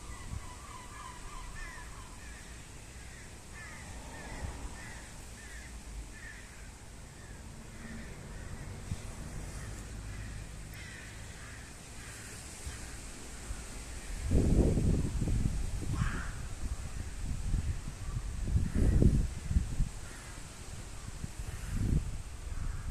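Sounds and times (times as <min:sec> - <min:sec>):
low outdoor rumble: 0:00.0 - 0:14.3.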